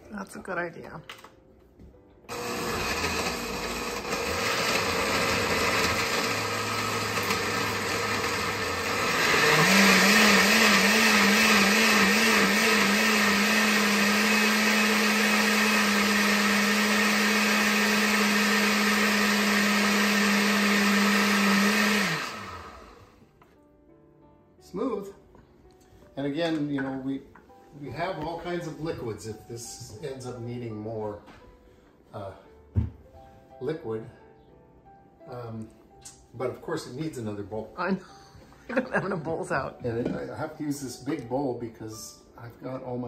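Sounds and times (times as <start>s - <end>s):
blender running: 2.3s - 23.1s.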